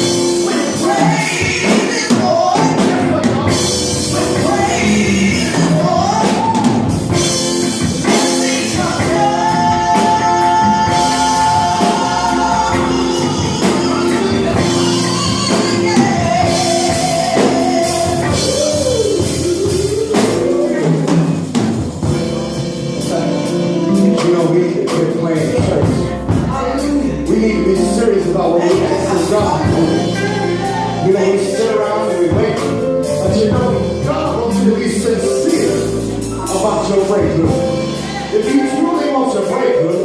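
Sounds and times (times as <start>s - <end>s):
band with drum kit: 0.0s - 40.0s
person singing long notes: 8.0s - 21.4s.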